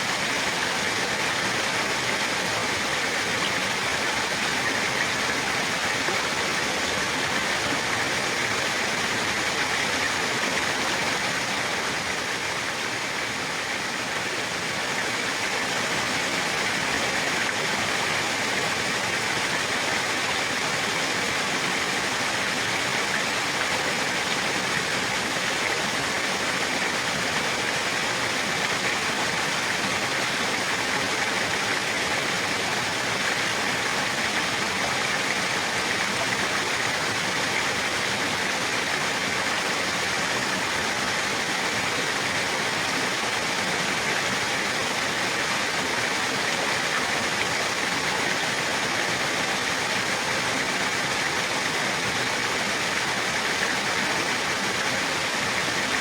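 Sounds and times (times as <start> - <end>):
flowing water rushing: 0.0 - 56.0.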